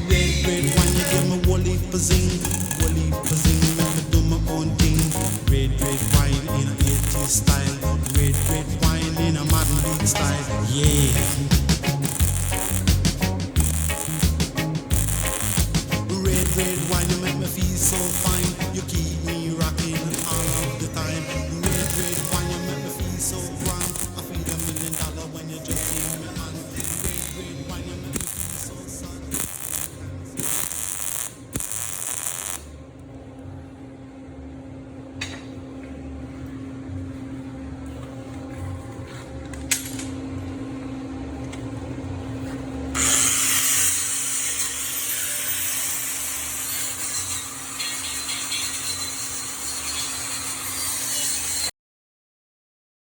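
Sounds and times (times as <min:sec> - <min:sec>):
loud hissing crackle: 0:00.0 - 0:32.7
power tool low hum: 0:00.0 - 0:32.9, 0:42.9 - 0:51.7.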